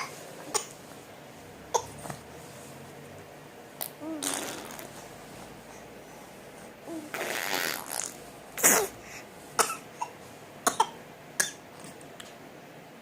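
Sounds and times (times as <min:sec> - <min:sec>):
baby blowing raspberries: 0:03.8 - 0:05.0, 0:07.1 - 0:08.9.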